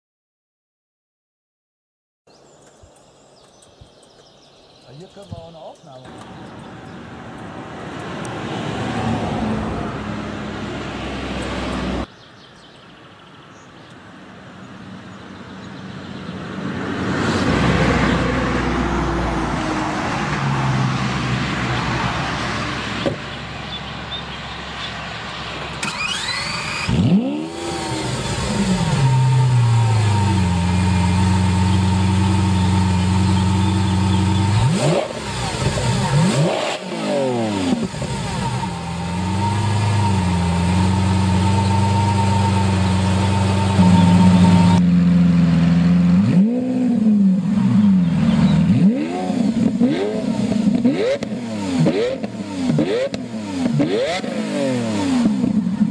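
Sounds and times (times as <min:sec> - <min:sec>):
car engine revving and accelerating: 0:06.1 - 0:12.1, 0:16.2 - 0:24.2, 0:25.7 - 0:55.9
car passing loudly: 0:06.1 - 0:12.1, 0:15.8 - 0:55.9.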